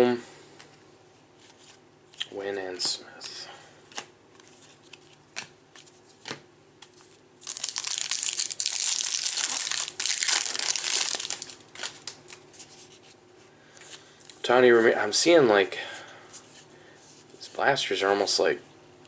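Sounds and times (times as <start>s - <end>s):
plastic foil wrapper tearing: 7.4s - 12.4s.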